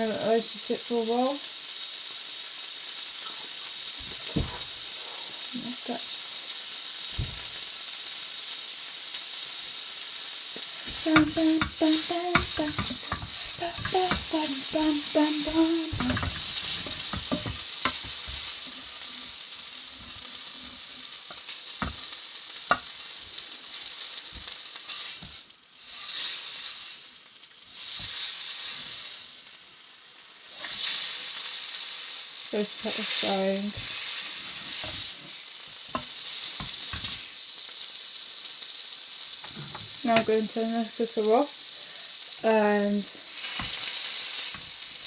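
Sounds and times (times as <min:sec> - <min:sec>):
bacon sizzling in a frying pan: 0:00.0 - 0:45.0
utensil scraping a pan: 0:10.6 - 0:22.1, 0:32.9 - 0:35.4, 0:36.0 - 0:37.3.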